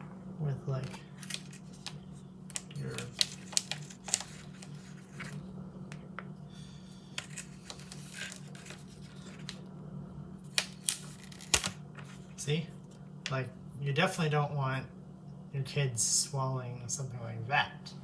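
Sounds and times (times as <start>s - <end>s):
low hum: 0.0s - 18.0s
plastic packaging crinkling: 0.8s - 5.4s, 7.1s - 9.6s, 10.4s - 12.3s.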